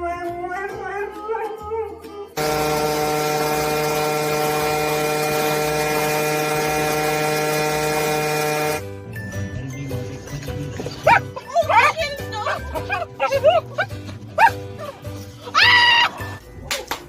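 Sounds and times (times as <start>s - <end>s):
loud machine hum with hiss: 2.4s - 8.8s.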